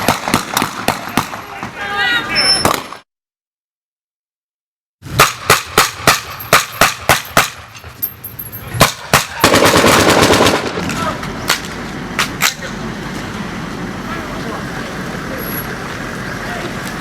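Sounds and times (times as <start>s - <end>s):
gunfire: 0.0s - 1.8s, 2.6s - 3.0s, 5.1s - 7.9s, 8.7s - 12.6s.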